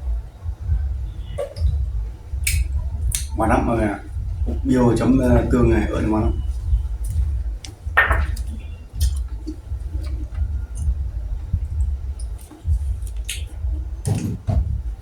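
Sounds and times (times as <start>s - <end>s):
steady low rumble: 0.0s - 15.0s
wet chewing and sucking: 11.6s - 14.5s.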